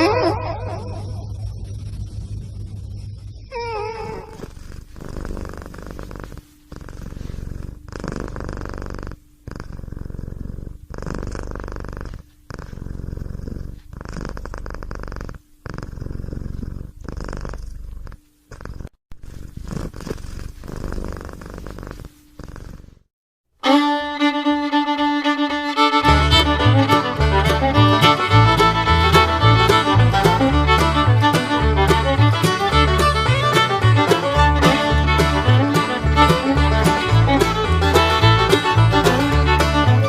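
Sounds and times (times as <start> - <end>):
cat purring: 0.7 - 23.1
fiddle music: 23.6 - 40.0
music beat: 23.6 - 40.0.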